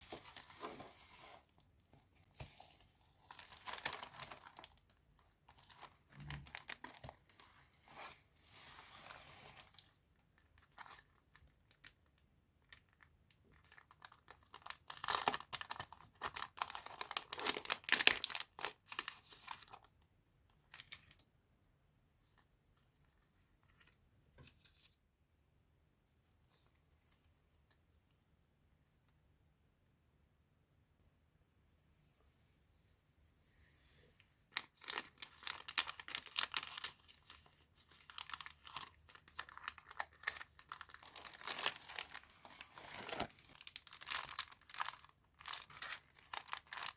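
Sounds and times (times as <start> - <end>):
packaging tearing and crinkling: 2.5 - 4.8, 5.6 - 8.1, 13.6 - 19.8, 34.6 - 46.9.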